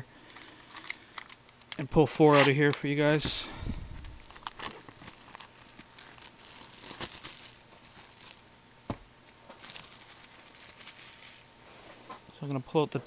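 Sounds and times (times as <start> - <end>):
packaging crinkling and tearing: 3.9 - 8.5, 9.3 - 11.5.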